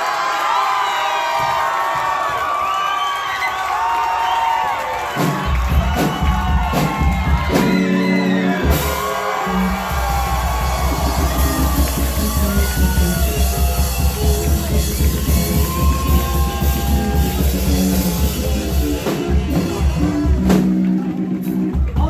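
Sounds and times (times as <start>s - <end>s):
crowd cheering and whooping: 0.0s - 22.0s
live rock band: 5.0s - 22.0s
drums and bass beat: 5.1s - 22.0s.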